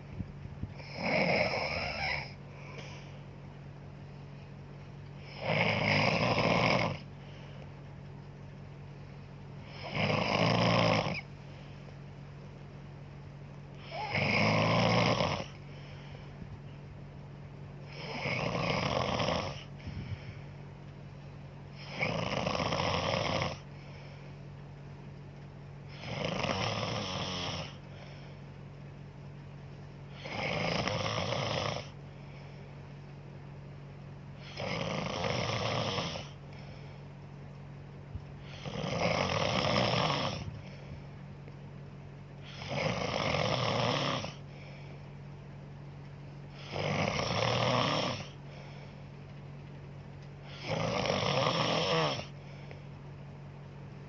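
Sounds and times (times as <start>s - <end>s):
woman snoring: 0.8s - 3.1s, 5.2s - 7.1s, 9.6s - 11.3s, 13.8s - 15.6s, 17.8s - 20.3s, 21.7s - 23.7s, 25.9s - 27.9s, 30.1s - 32.0s, 34.4s - 36.4s, 38.4s - 40.8s, 42.4s - 44.5s, 46.5s - 48.4s, 50.4s - 52.5s.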